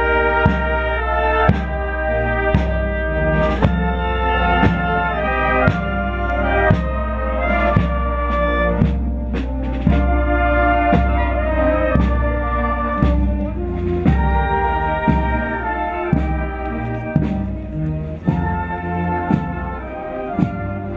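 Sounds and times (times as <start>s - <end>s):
trumpets and trombones holding notes: 0.0s - 20.9s
bass drum beats: 1.5s - 19.8s.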